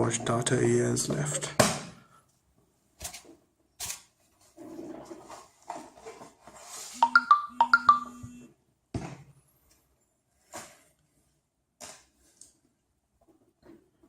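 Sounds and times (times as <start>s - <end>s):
smartphone electronic chime: 7.0s - 8.4s.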